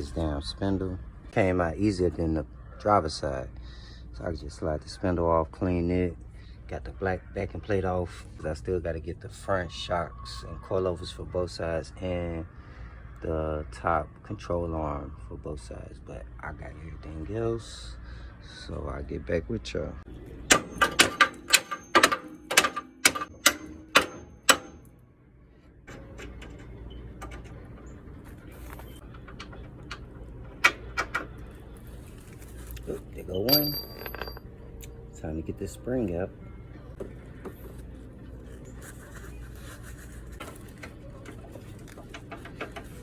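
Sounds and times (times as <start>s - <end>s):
hammer striking metal: 20.5s - 24.9s, 33.5s - 34.4s.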